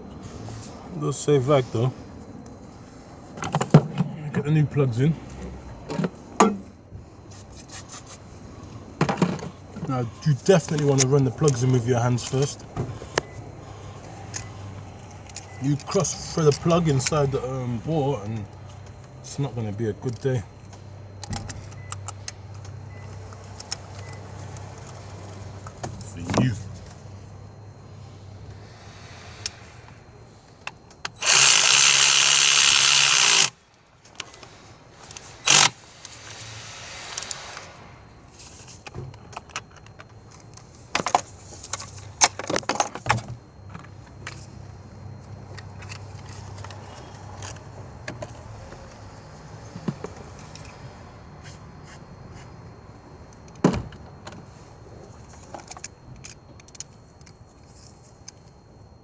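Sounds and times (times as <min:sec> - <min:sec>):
power tool or air burst: 0:31.2 - 0:33.6, 0:35.4 - 0:35.8.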